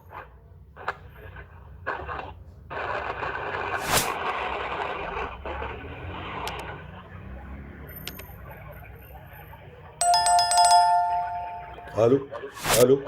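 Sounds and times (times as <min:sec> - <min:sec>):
phone ringing chime: 0:10.0 - 0:12.2.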